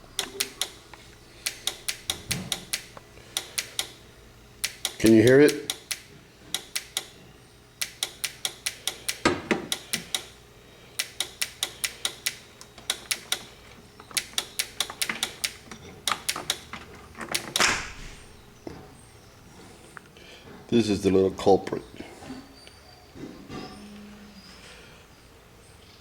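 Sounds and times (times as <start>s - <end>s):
horn relay ticking: 0.0s - 17.8s.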